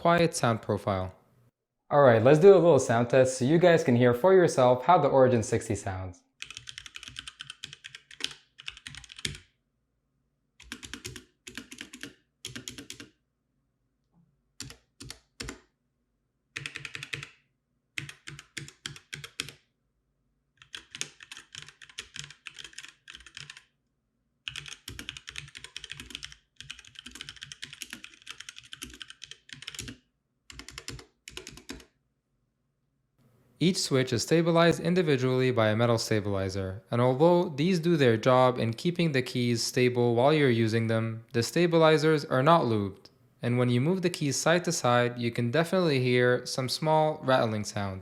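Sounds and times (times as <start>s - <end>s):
mechanical keyboard typing: 6.4s - 9.5s, 10.6s - 13.1s, 14.6s - 15.6s, 16.6s - 17.4s, 18.0s - 19.6s, 20.6s - 23.7s, 24.5s - 31.9s.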